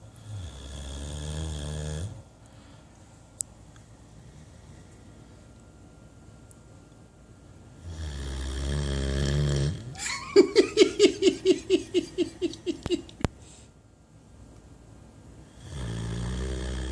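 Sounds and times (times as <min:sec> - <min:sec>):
dog snoring: 0:00.2 - 0:02.2, 0:07.8 - 0:09.9, 0:15.5 - 0:16.9.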